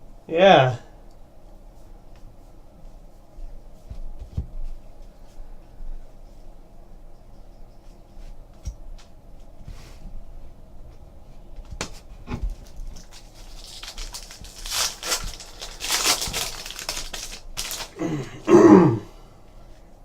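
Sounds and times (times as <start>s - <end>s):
foil wrappers crinkling and tearing: 12.5s - 18.2s.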